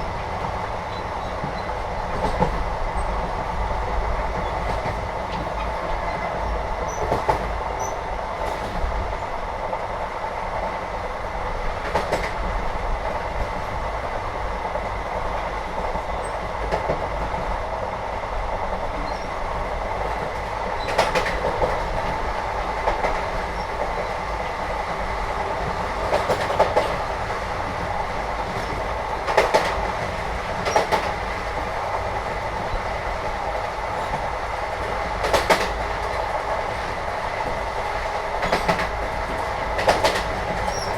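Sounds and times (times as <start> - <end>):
train rumble: 0.0 - 40.9
wheels clacking over rail joints: 20.1 - 32.9, 33.9 - 36.5, 37.4 - 40.9.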